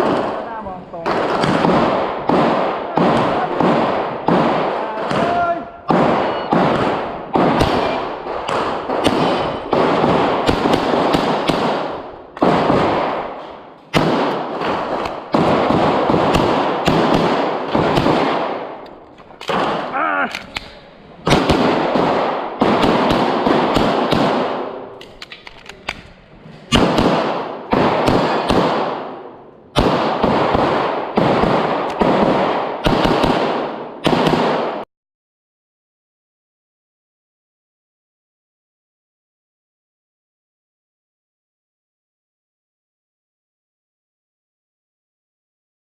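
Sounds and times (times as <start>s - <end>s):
handgun shots: 1.1s - 29.2s.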